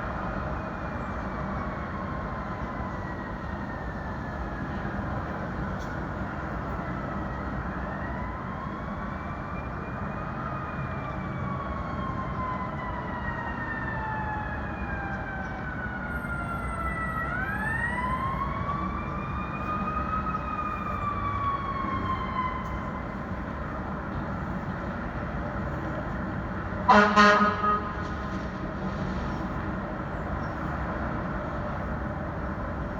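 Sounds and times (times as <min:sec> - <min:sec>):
city street traffic: 0:00.0 - 0:32.9
siren wailing: 0:07.2 - 0:28.8.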